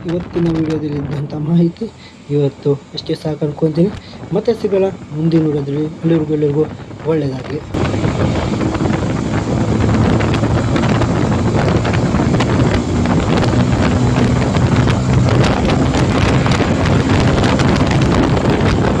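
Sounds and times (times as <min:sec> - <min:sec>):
wind buffeting microphone: 0:00.0 - 0:19.0
motorcycle engine running: 0:07.8 - 0:19.0.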